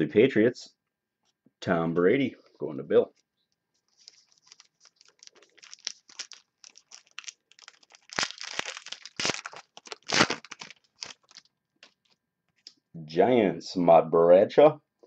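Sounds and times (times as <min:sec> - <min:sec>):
plastic card sleeves crinkling: 0:03.8 - 0:12.2.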